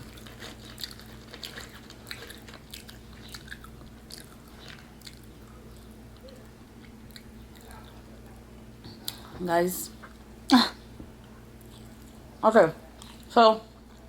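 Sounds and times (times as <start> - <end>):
wet crunchy chewing: 0.0 - 7.8.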